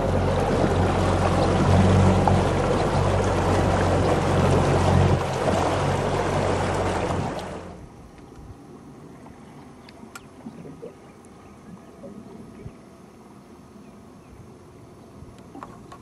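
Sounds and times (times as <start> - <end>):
boat motor running: 0.0 - 7.9
water rushing: 0.0 - 7.9.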